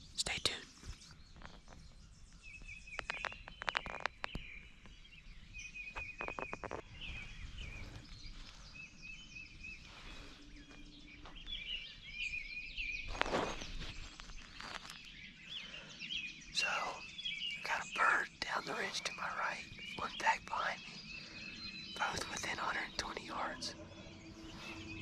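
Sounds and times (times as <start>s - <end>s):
songbirds chirping: 0.0s - 25.0s
sharp clicks and knocks: 2.9s - 4.4s.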